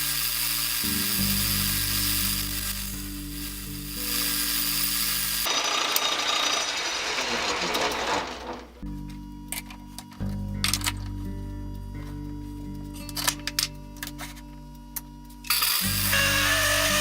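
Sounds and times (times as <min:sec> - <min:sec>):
power tool motor hum: 0:00.0 - 0:08.4, 0:15.5 - 0:17.0
tool cutting wood: 0:00.0 - 0:08.7, 0:15.5 - 0:17.0.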